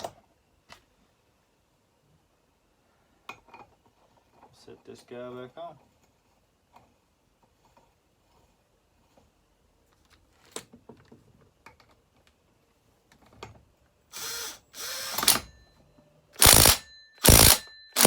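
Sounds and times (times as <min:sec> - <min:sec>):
chainsaw recoil starter pulled: 0:16.4 - 0:18.0.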